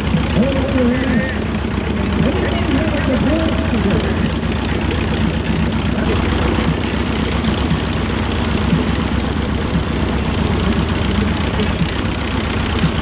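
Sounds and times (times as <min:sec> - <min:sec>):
low engine drone: 0:00.0 - 0:13.0.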